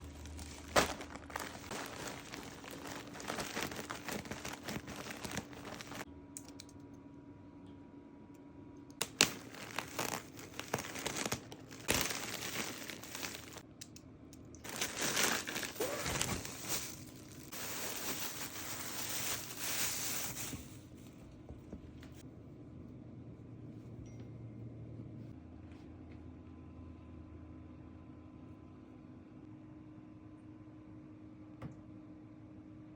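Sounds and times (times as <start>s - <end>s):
plastic packaging crinkling: 0.0s - 6.0s, 9.0s - 13.6s, 14.6s - 20.8s.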